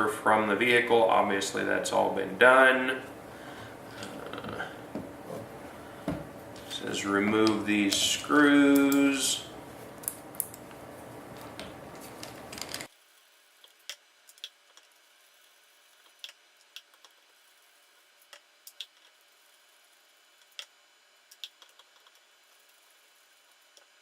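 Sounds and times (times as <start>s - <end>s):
dense rustling noise: 3.1s - 13.1s.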